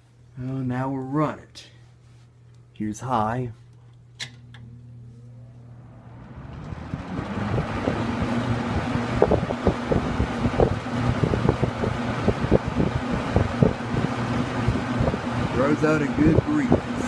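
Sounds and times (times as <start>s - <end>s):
box fan rush of air: 4.8s - 17.0s
airflow buffeting microphone: 5.3s - 17.0s.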